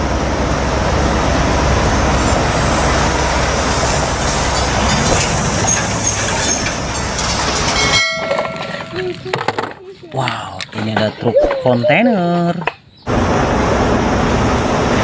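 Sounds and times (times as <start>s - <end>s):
plastic toy wheels rolling: 8.8s - 11.1s.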